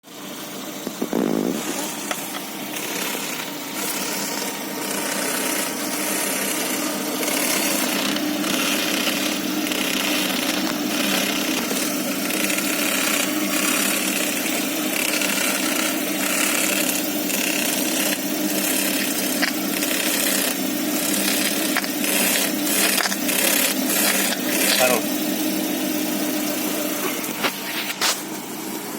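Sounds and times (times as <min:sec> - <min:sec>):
small motor running: 0:00.0 - 0:28.9
rough uneven noise: 0:01.0 - 0:25.1, 0:26.9 - 0:28.4.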